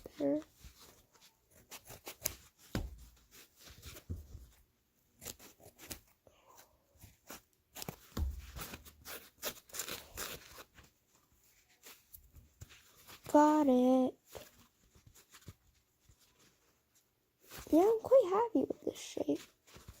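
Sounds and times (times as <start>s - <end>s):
rustling: 0.0s - 20.0s
scissors cutting foam sponge: 1.5s - 3.2s, 7.2s - 10.7s
dull handling bumps: 2.6s - 4.6s.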